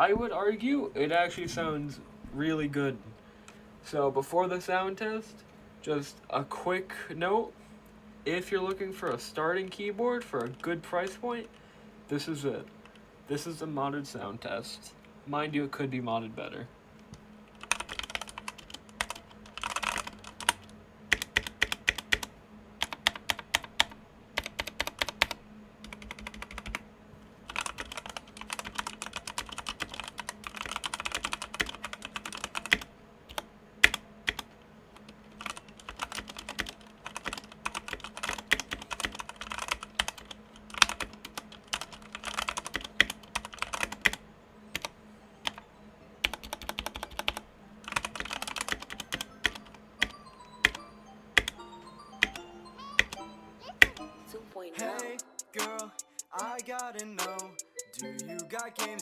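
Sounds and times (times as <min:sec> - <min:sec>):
mechanical keyboard typing: 0:10.4 - 0:11.6, 0:17.5 - 0:26.8, 0:27.4 - 0:54.1.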